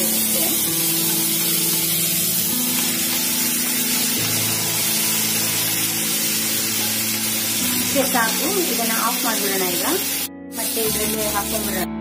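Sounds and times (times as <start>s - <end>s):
food sizzling in oil: 0.0s - 11.9s.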